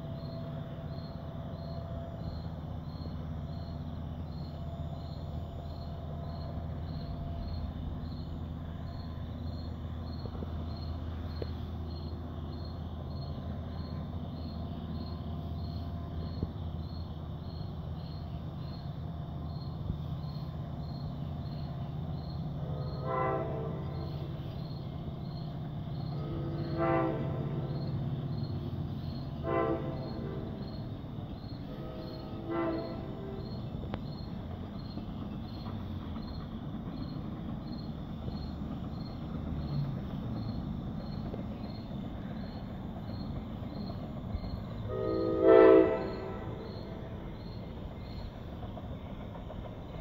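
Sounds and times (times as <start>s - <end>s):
diesel locomotive engine drone: 0.0s - 50.0s
air horn blasts: 23.0s - 23.9s, 26.6s - 27.7s, 29.4s - 30.6s, 31.7s - 33.4s, 44.9s - 46.7s.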